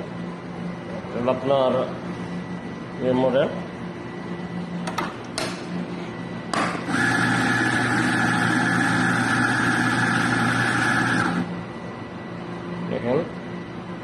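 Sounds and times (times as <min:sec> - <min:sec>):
coffee grinder humming: 0:06.6 - 0:11.6.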